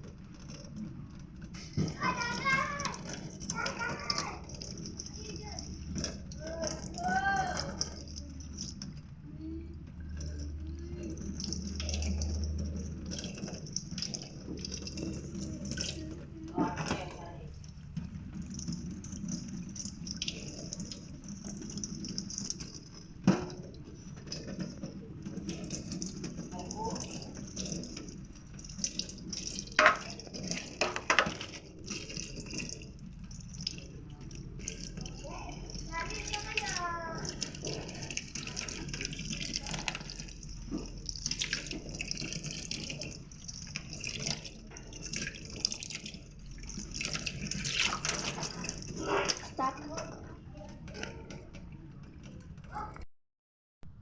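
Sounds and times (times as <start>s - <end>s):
water splashing and dripping: 0.0s - 53.0s.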